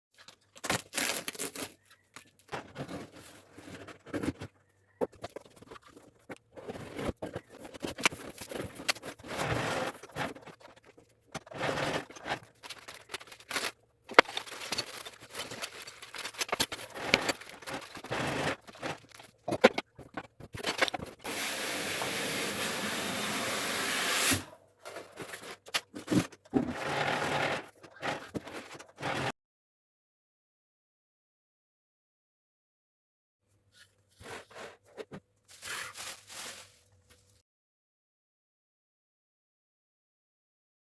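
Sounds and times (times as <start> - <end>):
packaging scraped and torn: 0.2 - 4.3, 5.2 - 21.6, 24.2 - 29.3, 34.2 - 37.4
tape ripping: 0.6 - 1.8, 35.5 - 36.7.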